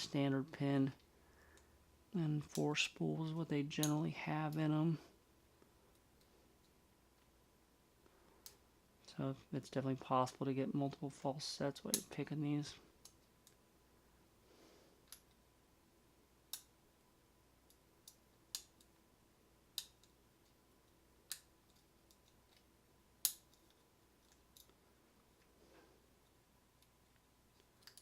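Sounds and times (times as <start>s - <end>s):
lock-picking clicks: 16.4s - 16.8s, 17.6s - 19.0s, 19.7s - 24.8s, 26.2s - 28.0s.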